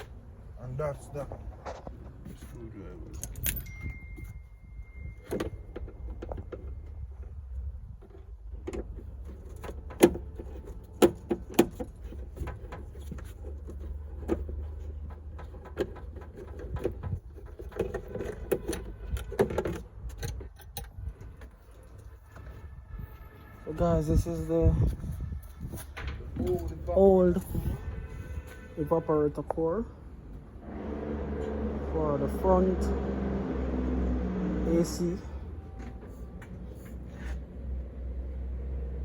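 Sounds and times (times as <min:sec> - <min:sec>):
hand tools clinking and clanking: 0:02.2 - 0:07.1.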